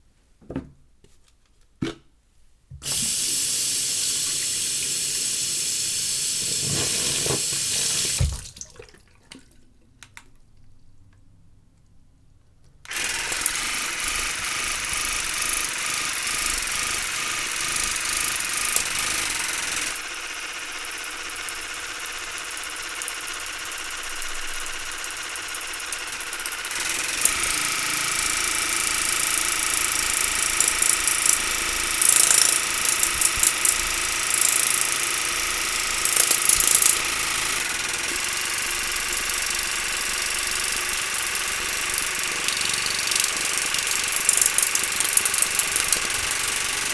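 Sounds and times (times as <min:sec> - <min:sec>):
water flosser jet hissing: 0:02.8 - 0:08.6, 0:12.9 - 0:20.0, 0:21.0 - 0:46.9
clicks: 0:26.9 - 0:46.9.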